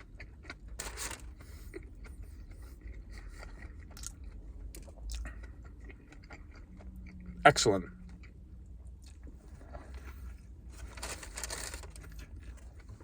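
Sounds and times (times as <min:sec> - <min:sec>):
person chewing food: 0:00.0 - 0:10.7, 0:11.9 - 0:13.0
food wrapper rustle: 0:10.8 - 0:13.0.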